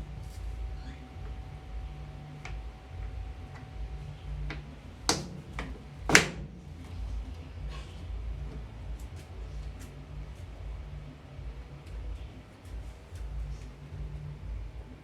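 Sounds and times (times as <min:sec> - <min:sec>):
low hum: 0:00.0 - 0:15.0
washing machine switch clicks: 0:02.4 - 0:07.0.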